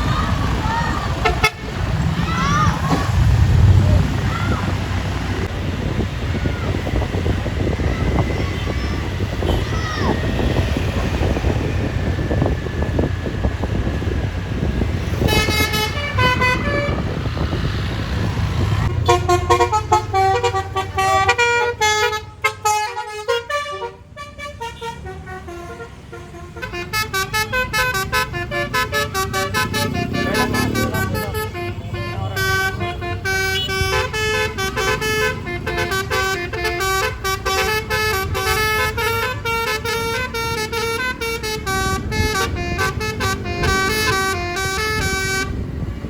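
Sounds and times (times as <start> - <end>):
bus engine running: 0.0 - 46.0
bus horn playing a tune: 1.2 - 1.9, 8.4 - 13.1, 14.6 - 17.5, 18.8 - 46.0.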